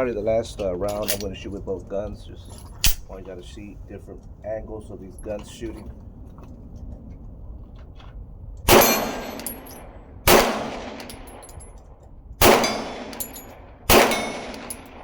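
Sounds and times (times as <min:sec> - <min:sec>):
pistol shots: 0:08.7 - 0:11.5, 0:12.4 - 0:15.0.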